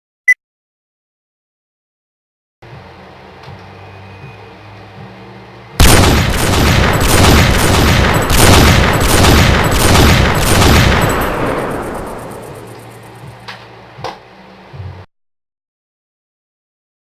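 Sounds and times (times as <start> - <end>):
rapid pistol shots: 5.8 - 13.1.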